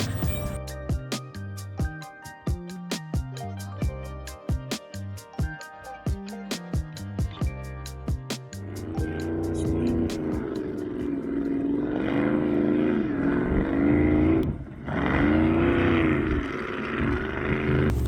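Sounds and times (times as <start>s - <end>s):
off-road vehicle engine revving: 8.6s - 18.0s.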